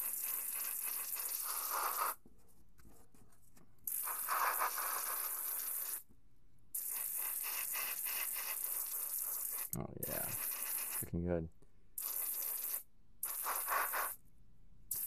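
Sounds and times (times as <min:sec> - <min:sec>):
airbrush spraying air: 0:00.0 - 0:02.2, 0:03.9 - 0:06.0, 0:06.8 - 0:11.1, 0:12.0 - 0:14.2.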